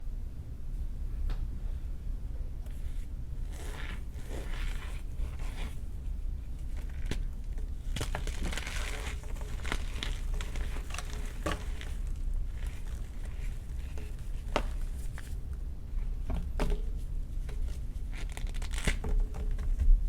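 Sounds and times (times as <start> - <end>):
chalk crunching: 2.7 - 5.8, 6.6 - 15.4.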